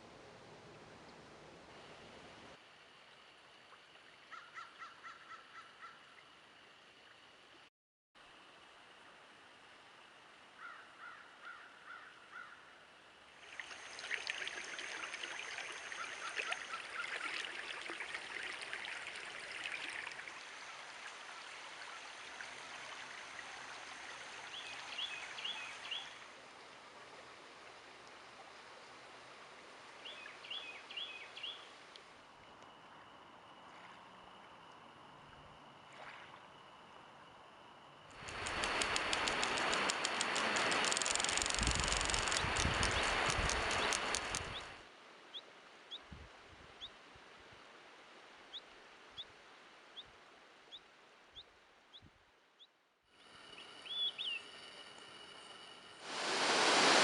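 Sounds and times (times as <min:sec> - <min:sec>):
running water: 0:13.4 - 0:32.2, 0:38.1 - 0:44.8, 0:56.0 - 0:57.0.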